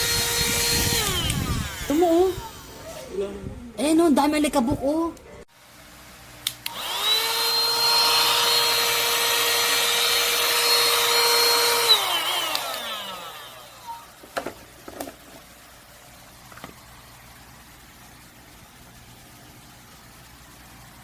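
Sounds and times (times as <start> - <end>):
handheld vacuum cleaner whining: 0.0 - 3.1, 6.6 - 15.1.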